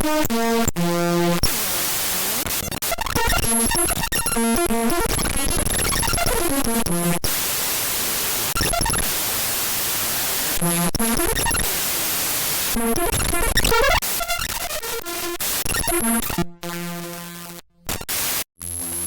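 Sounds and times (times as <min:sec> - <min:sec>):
crackling static: 0:00.8 - 0:19.0.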